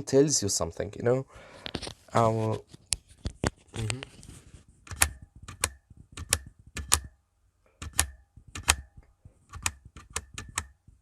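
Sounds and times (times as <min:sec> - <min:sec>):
keyboard space bar clacking: 0:04.9 - 0:07.1, 0:07.8 - 0:08.9, 0:09.5 - 0:10.8.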